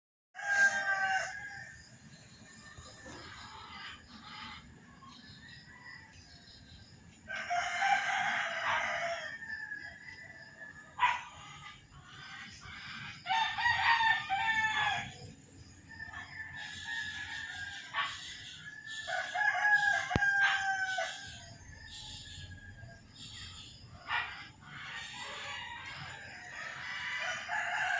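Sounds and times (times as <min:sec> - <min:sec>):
roosters crowing: 0:00.4 - 0:02.0, 0:07.2 - 0:27.9.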